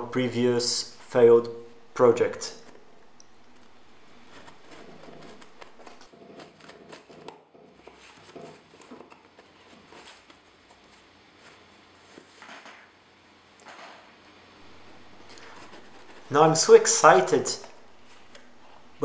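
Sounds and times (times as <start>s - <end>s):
packaging rustling and crackling: 2.5s - 7.2s, 14.6s - 19.0s.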